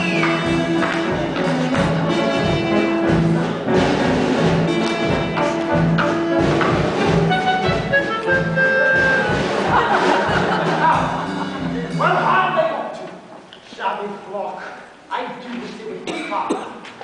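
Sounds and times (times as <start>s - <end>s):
pit band playing brass passage: 0.0s - 12.6s.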